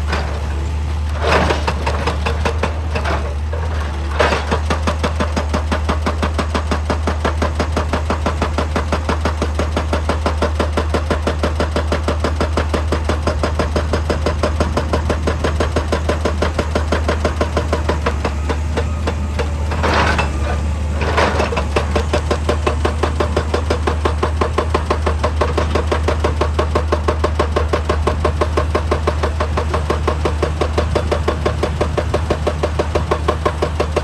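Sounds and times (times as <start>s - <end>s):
excavator diesel engine rapping: 0.0s - 34.0s
rock grinding: 12.3s - 25.7s.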